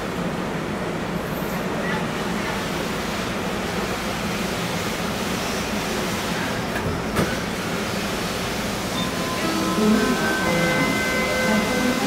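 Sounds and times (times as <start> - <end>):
train hum and hiss: 0.0 - 12.0.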